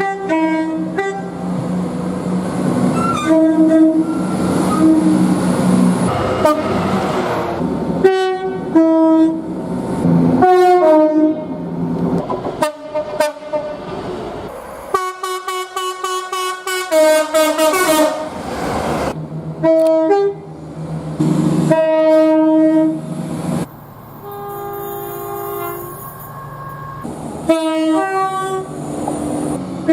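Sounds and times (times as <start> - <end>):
train horn blasts: 0.0 - 1.4, 3.0 - 5.3, 6.1 - 9.5, 10.4 - 11.6, 12.6 - 13.8, 14.9 - 18.3, 19.6 - 20.5, 21.6 - 23.0, 24.2 - 28.8.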